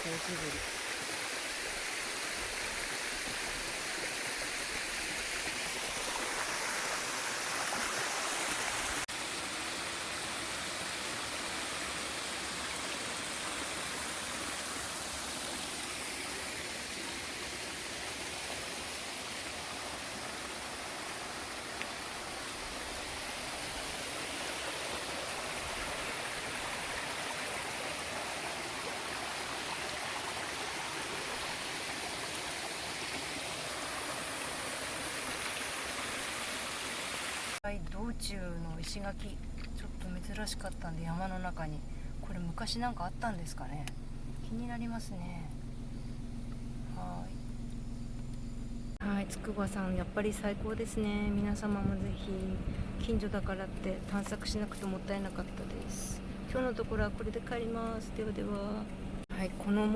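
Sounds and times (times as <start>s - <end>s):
waterfall rushing over rock: 0.0s - 37.6s.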